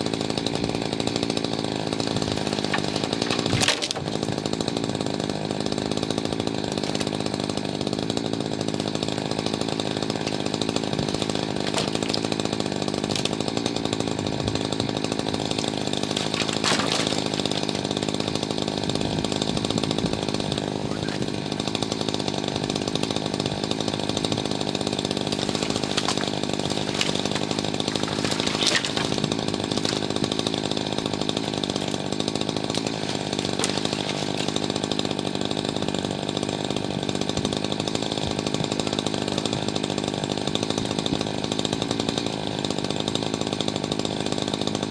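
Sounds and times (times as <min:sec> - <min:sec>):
chainsaw running: 0:00.0 - 0:44.9
sharp cracks: 0:02.0 - 0:05.0, 0:06.5 - 0:19.5, 0:24.5 - 0:35.8.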